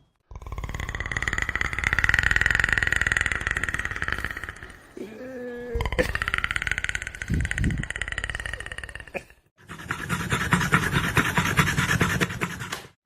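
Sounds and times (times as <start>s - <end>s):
dog panting fast: 9.6s - 13.0s.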